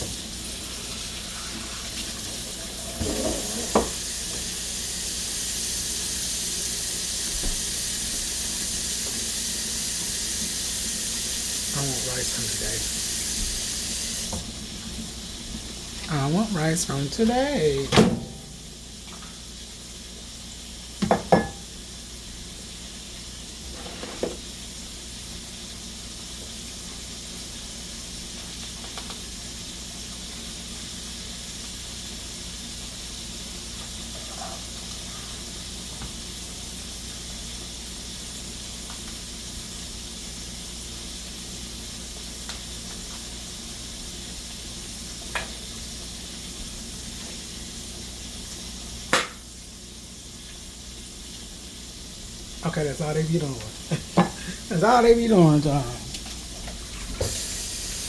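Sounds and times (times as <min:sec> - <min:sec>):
meat sizzling in a pan: 0:00.0 - 0:58.0
cookware knocks: 0:21.0 - 0:21.6.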